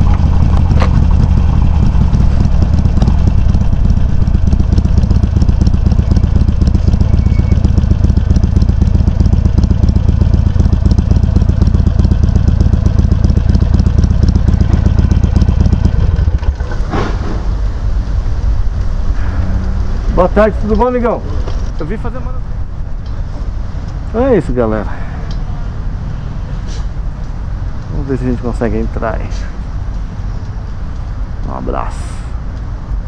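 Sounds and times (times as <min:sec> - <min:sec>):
v-twin motorcycle engine running: 0:00.0 - 0:18.9.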